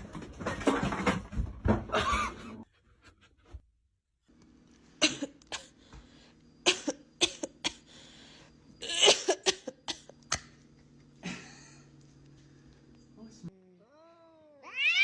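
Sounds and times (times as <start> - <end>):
faint hum: 2.0 - 15.0
person coughing: 6.7 - 7.9, 8.8 - 10.1.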